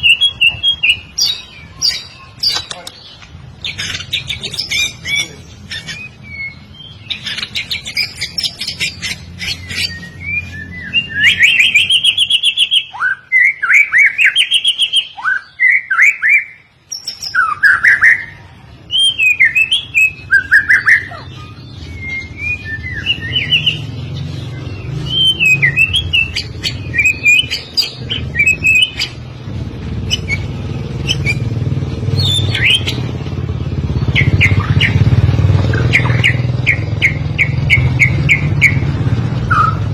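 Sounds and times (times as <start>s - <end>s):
bird singing whistled phrases: 0.0s - 2.8s, 3.6s - 24.0s, 24.6s - 29.2s, 30.1s - 31.5s, 32.2s - 33.1s, 34.1s - 35.1s, 35.7s - 38.9s, 39.5s - 39.9s
low engine-like rumble: 18.1s - 39.9s.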